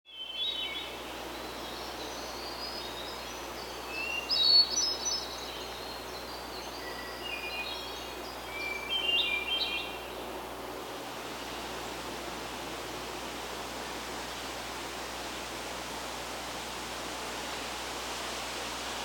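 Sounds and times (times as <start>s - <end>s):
songbirds singing: 0.1s - 10.5s
background hiss: 0.1s - 19.0s.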